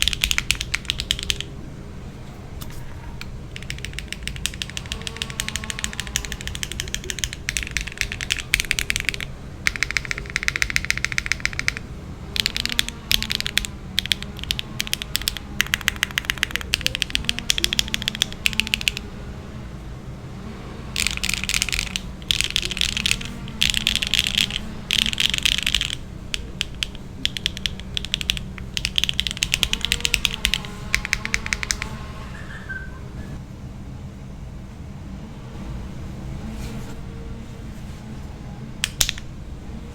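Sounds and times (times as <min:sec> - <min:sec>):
typing on mechanical keyboard: 0:00.0 - 0:01.6, 0:02.6 - 0:19.0, 0:21.0 - 0:32.0, 0:38.8 - 0:39.3
steady low hum: 0:00.0 - 0:39.9.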